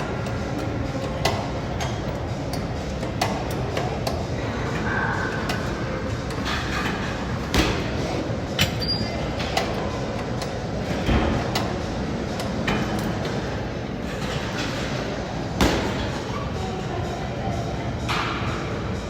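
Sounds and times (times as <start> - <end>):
gym equipment clanking: 0.0 - 13.4
steady background noise: 0.0 - 19.0.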